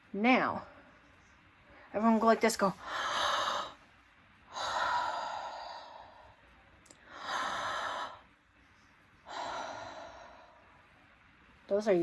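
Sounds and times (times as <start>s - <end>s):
woman breathing deeply: 2.8s - 3.8s, 4.5s - 8.3s, 9.2s - 10.9s.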